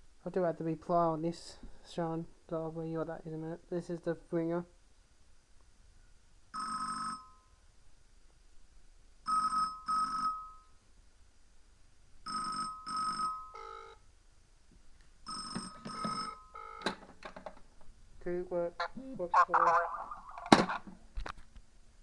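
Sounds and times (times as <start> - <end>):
payphone ringing: 6.6 - 7.4, 9.3 - 10.7, 12.3 - 14.0, 15.3 - 17.0.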